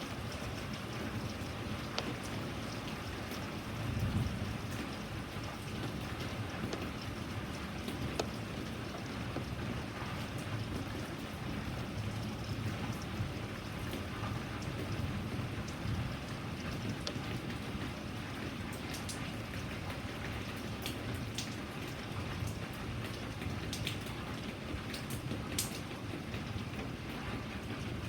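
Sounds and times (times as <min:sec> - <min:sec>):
low constant rumble: 0:00.0 - 0:21.5
raindrops ticking on a surface: 0:00.0 - 0:28.0
steady rain falling: 0:00.0 - 0:28.0.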